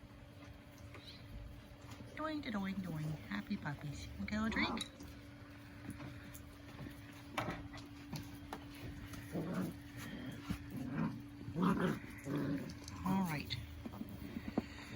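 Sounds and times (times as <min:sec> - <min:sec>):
puppies whimpering and growling: 0:09.0 - 0:12.9.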